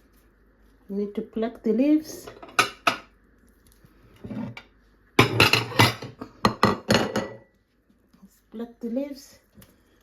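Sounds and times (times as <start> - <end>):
dishes and utensils clattering: 2.2 - 3.1, 4.2 - 7.5.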